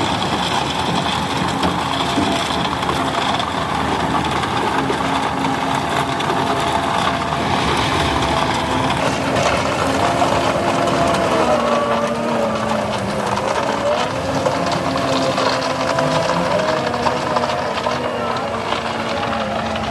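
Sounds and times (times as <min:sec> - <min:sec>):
diesel engine running: 0:00.0 - 0:19.9
faint wavering whine: 0:06.3 - 0:12.1.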